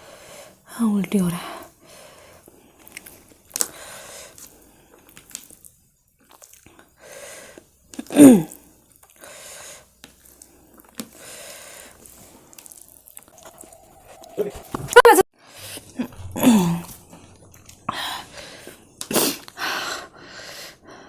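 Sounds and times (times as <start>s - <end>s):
person breathing hard: 0.0s - 0.7s, 3.6s - 4.8s, 9.2s - 21.0s
person groaning: 13.7s - 15.2s, 16.0s - 17.0s.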